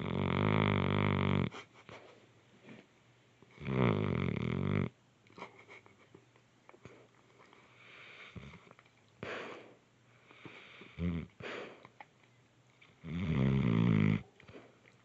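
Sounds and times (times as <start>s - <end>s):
person snoring: 0.0s - 1.5s, 3.6s - 4.9s, 10.6s - 11.3s, 13.0s - 14.2s.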